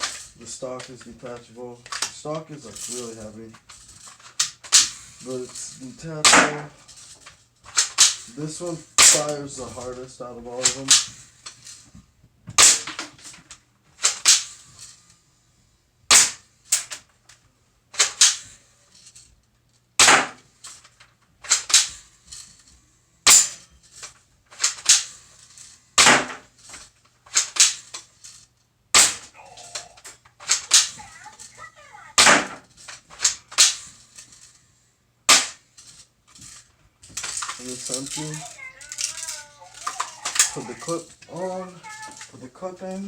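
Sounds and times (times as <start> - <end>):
airsoft rifle shots: 6.2 - 6.7, 9.0 - 9.3, 12.6 - 13.0, 16.1 - 16.4, 20.0 - 20.4, 26.0 - 26.4, 28.9 - 29.3, 32.2 - 32.6, 35.3 - 35.6.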